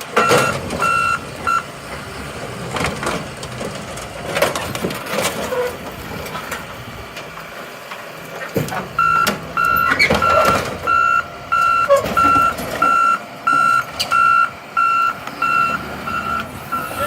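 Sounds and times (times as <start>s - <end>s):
reversing vehicle backup alarm: 0.0s - 4.8s, 8.6s - 17.0s
metal clanks and knocks: 0.0s - 14.2s.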